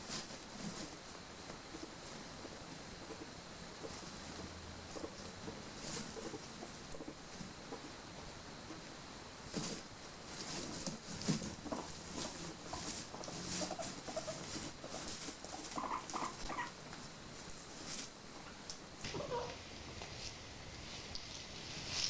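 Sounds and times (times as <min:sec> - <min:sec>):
guinea pigs rustling in cage: 0:00.0 - 0:22.0
guinea pig squeaks: 0:01.7 - 0:08.8, 0:09.5 - 0:18.1, 0:19.0 - 0:19.6.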